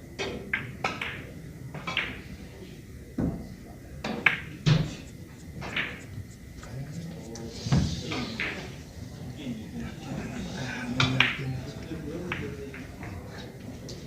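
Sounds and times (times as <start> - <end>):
billiard balls clacking: 5.4 - 6.2.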